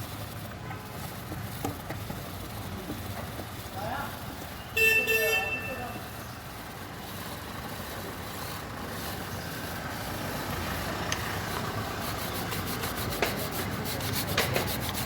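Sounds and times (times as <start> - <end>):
brush scrubbing metal chain: 6.0 - 15.0.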